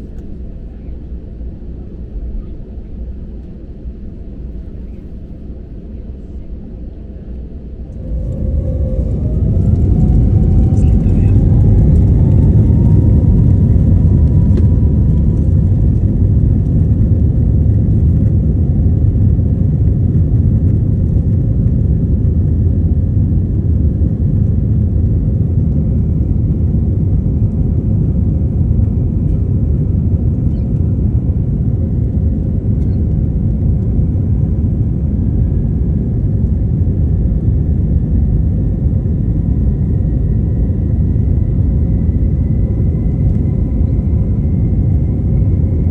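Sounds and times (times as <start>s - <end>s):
faint engine tones: 0.0s - 36.7s
loud low rumble of engines and airflow: 0.0s - 45.9s.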